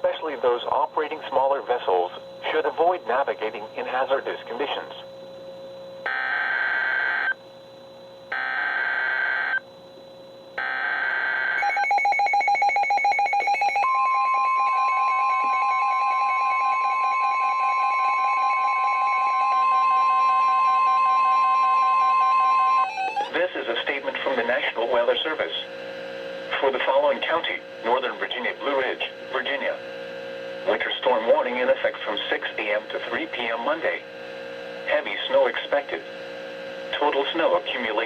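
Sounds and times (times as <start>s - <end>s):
beeping and chirping alarms: 10.6s - 23.4s.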